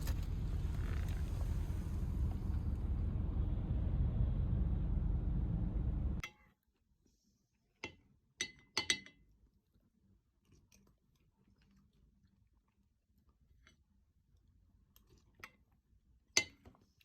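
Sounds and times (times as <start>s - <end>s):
low rumble: 0.0s - 6.2s.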